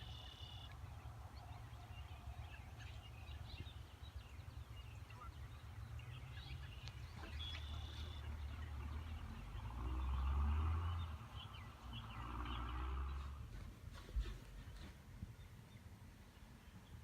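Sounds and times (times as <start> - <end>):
birds chirping and calling: 0.0 - 13.4.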